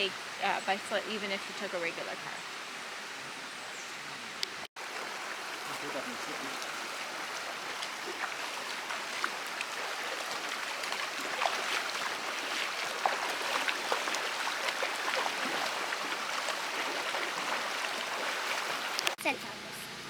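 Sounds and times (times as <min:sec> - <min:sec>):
small water splashes: 0:04.4 - 0:19.2.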